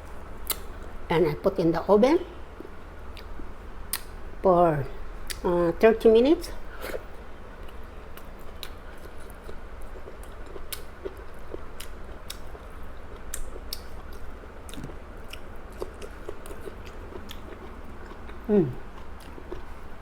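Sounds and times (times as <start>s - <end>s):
steady low hum: 0.0s - 20.0s
person chewing food: 6.6s - 20.0s.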